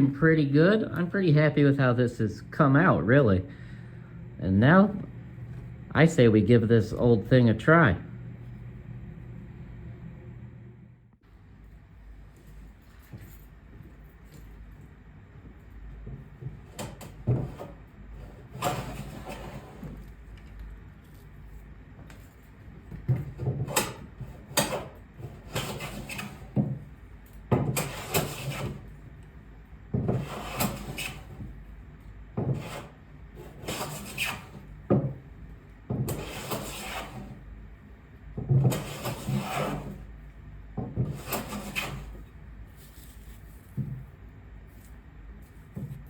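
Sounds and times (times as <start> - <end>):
hand plane shaving wood: 24.6 - 26.5, 27.8 - 28.8, 30.1 - 31.4, 32.4 - 34.6, 36.1 - 37.4, 38.7 - 40.0, 41.0 - 42.2.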